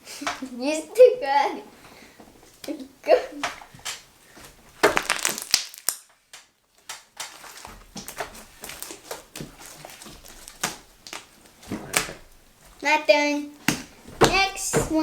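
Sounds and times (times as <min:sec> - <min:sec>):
slime clicking and crackling: 0:04.8 - 0:06.0, 0:06.8 - 0:12.4.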